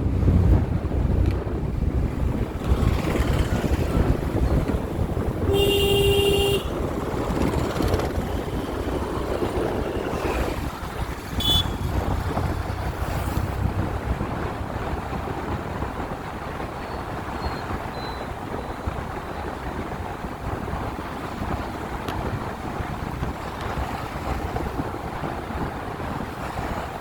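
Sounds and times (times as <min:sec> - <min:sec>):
low rumble of passing traffic: 0:00.0 - 0:27.0
vehicle horn: 0:05.4 - 0:06.9, 0:11.3 - 0:12.0.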